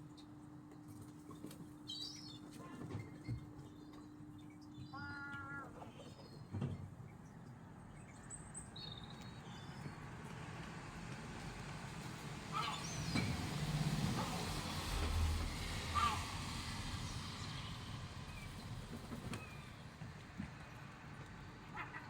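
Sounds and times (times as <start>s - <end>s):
harsh bird calls: 4.8s - 6.4s, 12.5s - 13.2s, 15.9s - 16.4s
road vehicle passing: 10.1s - 22.0s.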